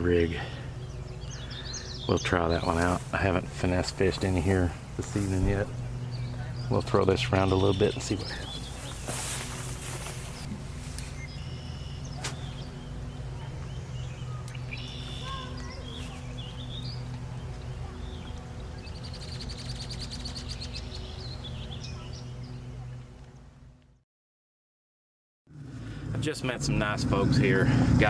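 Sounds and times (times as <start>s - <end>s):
bird trill: 0.0s - 2.8s, 11.0s - 23.0s
birds chirping and calling: 0.0s - 23.0s
steady low hum: 0.0s - 23.8s.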